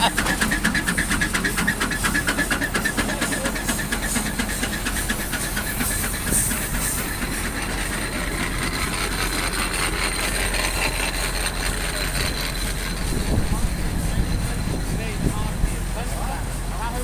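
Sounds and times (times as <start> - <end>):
hiss: 0.1 - 12.0.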